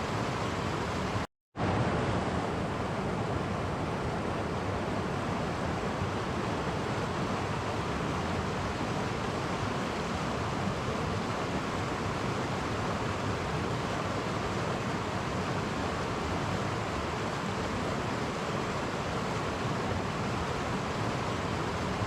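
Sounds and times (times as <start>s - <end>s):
stream flowing over cascades: 0.0s - 22.0s.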